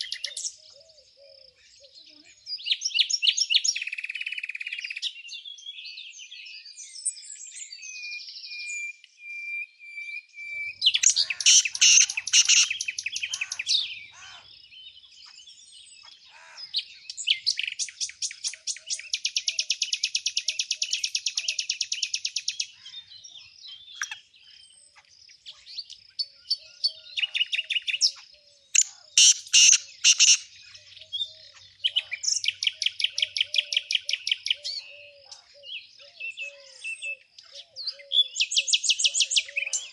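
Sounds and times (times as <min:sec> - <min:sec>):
songbirds trilling: 0:00.0 - 0:08.4, 0:10.4 - 0:39.9
soft bird chirps: 0:10.4 - 0:39.9.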